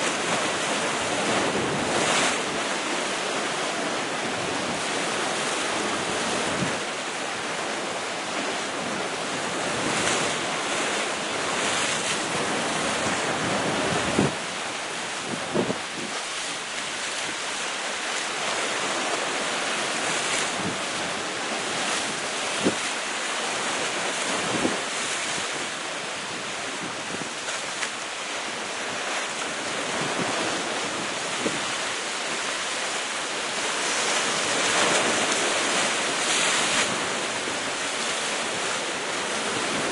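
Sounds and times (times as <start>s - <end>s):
wind on microphone: 0.0s - 3.3s, 4.1s - 6.9s, 11.3s - 17.4s, 20.0s - 23.0s, 23.7s - 27.8s, 28.5s - 32.6s
waves breaking on rocks: 0.0s - 39.9s.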